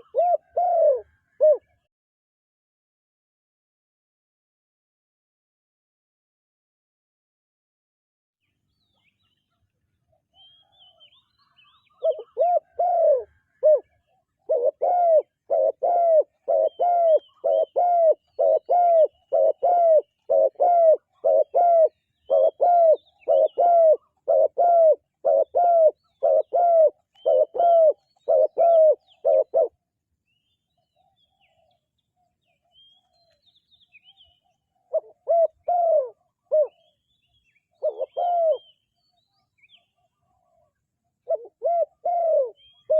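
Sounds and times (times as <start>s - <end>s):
dove cooing: 0.0s - 1.9s, 10.9s - 29.8s, 34.2s - 37.0s, 37.7s - 38.8s, 39.6s - 42.9s
small birds chirping: 8.4s - 42.9s.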